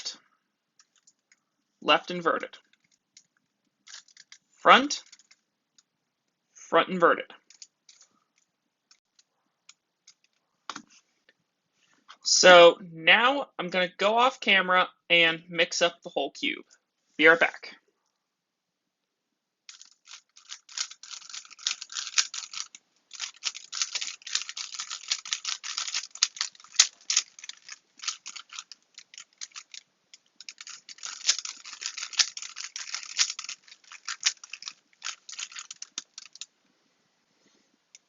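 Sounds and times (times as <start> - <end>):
puzzle cube clacking clicks: 2.6 - 4.4, 5.0 - 5.9, 19.7 - 36.5.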